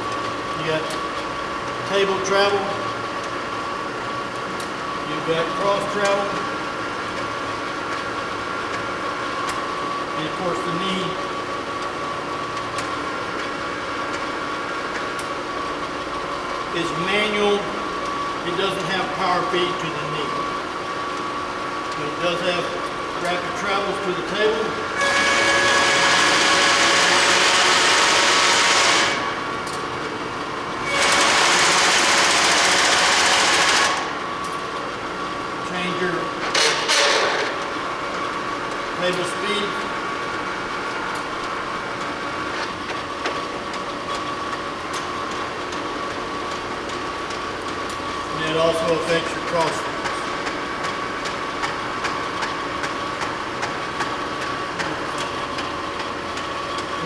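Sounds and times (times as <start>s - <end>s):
milling machine running: 0.0s - 57.0s
loud mechanical whir: 12.1s - 57.0s.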